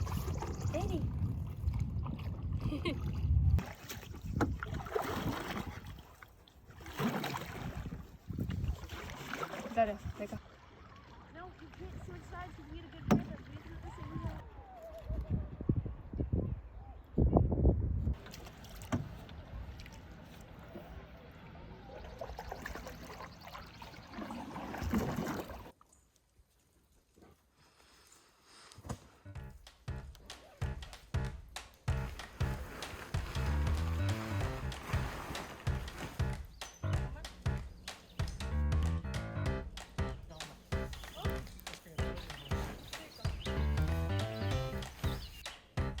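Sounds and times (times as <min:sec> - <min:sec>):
wind buffeting microphone: 0:00.0 - 0:04.9, 0:07.6 - 0:08.9, 0:13.0 - 0:18.2
canoe paddles stroking water: 0:00.0 - 0:14.5, 0:18.2 - 0:25.7, 0:31.9 - 0:46.0.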